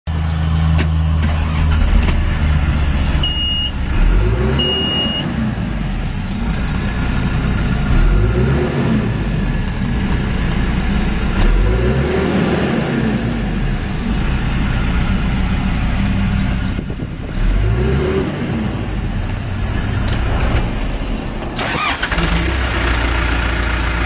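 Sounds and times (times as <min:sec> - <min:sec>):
diesel engine idling and revving: 0:00.1 - 0:24.0
short high beeps: 0:03.2 - 0:03.8, 0:04.5 - 0:05.3.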